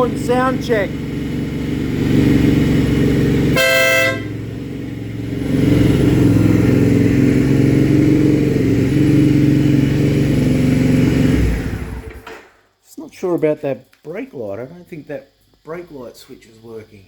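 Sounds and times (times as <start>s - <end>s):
motorcycle engine idling: 0.0s - 12.3s
motorcycle horn short blast: 3.5s - 4.5s.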